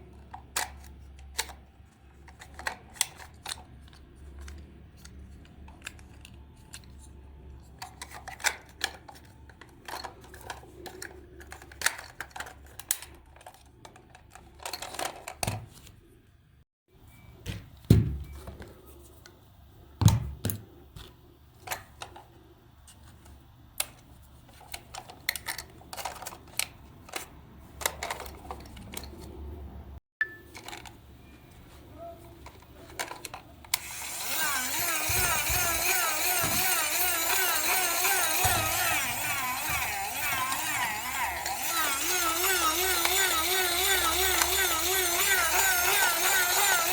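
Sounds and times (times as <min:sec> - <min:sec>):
plastic toy parts clicking: 0:00.1 - 0:15.9, 0:21.6 - 0:22.3, 0:23.7 - 0:29.3, 0:30.5 - 0:31.0, 0:32.3 - 0:46.9.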